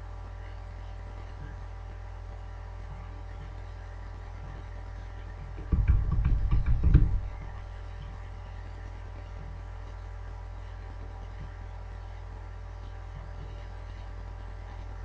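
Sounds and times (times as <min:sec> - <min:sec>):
electrical hum: 0:00.0 - 0:15.0
low rumbling with knocks and rattles: 0:04.4 - 0:08.3.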